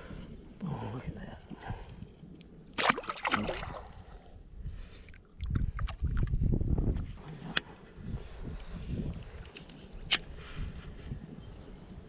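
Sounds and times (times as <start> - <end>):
water splashing and sloshing: 2.7 - 6.4
wind buffeting microphone: 3.3 - 12.0.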